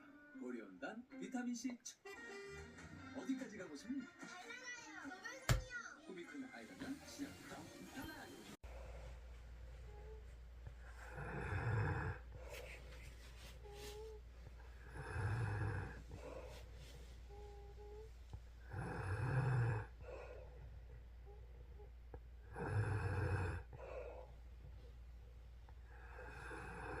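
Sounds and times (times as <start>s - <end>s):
woman snoring: 9.8s - 12.4s, 13.6s - 16.6s, 17.2s - 20.6s, 21.2s - 24.2s, 25.9s - 27.0s.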